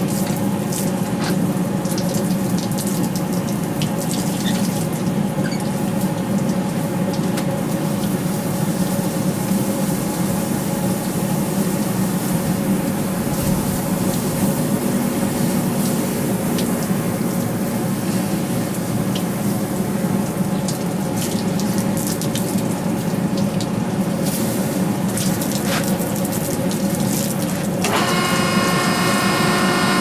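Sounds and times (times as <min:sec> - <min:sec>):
underlying hum: 0:00.0 - 0:30.0
equipment rushing roar: 0:12.9 - 0:19.0.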